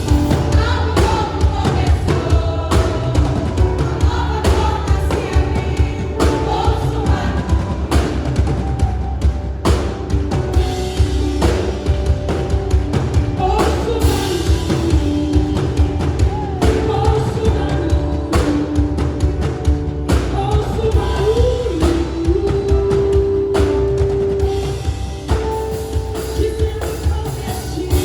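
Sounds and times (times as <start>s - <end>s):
worship song with band: 0.0s - 28.0s
person singing: 13.4s - 19.6s, 20.2s - 25.0s.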